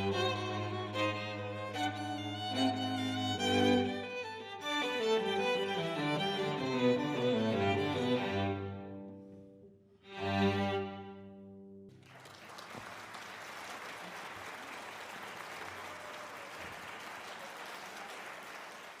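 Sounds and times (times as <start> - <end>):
audience applause: 12.0 - 19.0.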